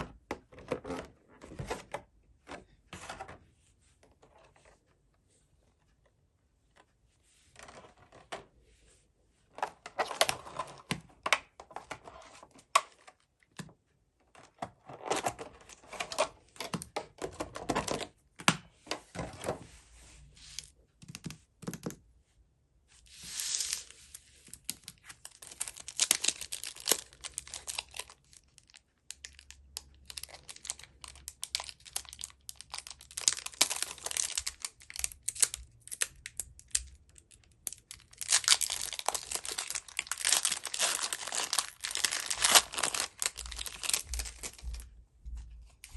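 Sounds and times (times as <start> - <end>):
packaging tearing and crinkling: 25.3 - 28.1, 30.1 - 36.8, 37.8 - 44.6.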